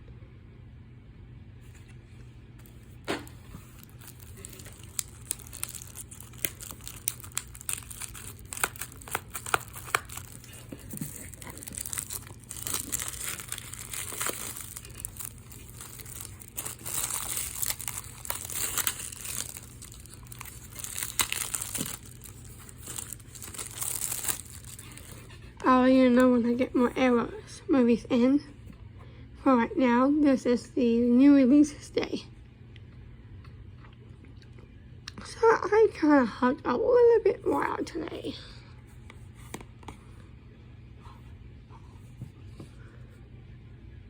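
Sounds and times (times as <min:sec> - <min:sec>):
faint steady hum: 0:00.0 - 0:44.0
plastic packaging crinkling and tearing: 0:02.6 - 0:25.4.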